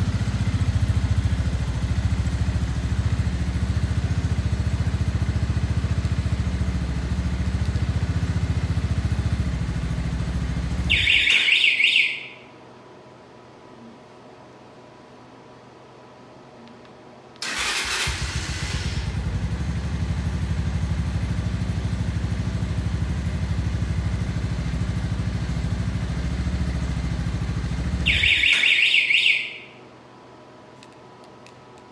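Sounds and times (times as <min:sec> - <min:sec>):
motorcycle engine idling: 0:00.0 - 0:11.6, 0:17.5 - 0:29.6.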